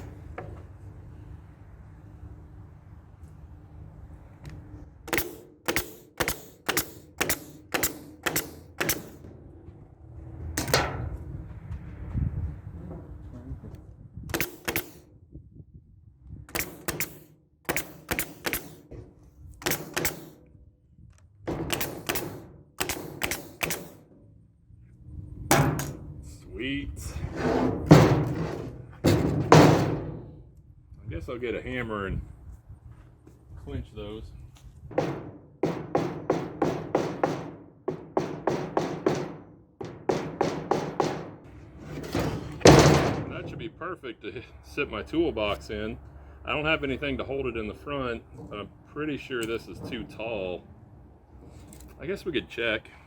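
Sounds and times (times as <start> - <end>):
staple gun clacks: 5.1 - 9.2, 14.3 - 15.0, 16.5 - 18.9, 19.6 - 20.4, 21.7 - 24.0.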